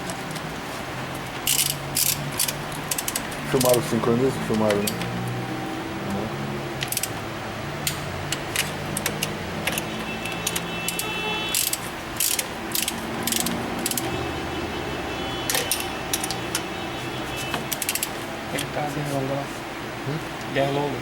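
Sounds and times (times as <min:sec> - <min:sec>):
ratchet wrench clicking: 0:01.4 - 0:03.9, 0:06.8 - 0:07.2, 0:07.8 - 0:14.1, 0:15.5 - 0:16.7, 0:17.7 - 0:18.2.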